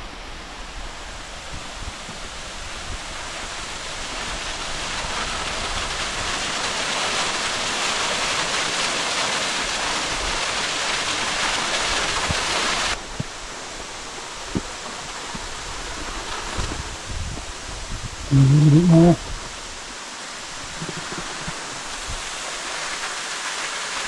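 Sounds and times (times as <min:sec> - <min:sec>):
waterfall pouring: 0:02.8 - 0:13.0, 0:19.9 - 0:24.0.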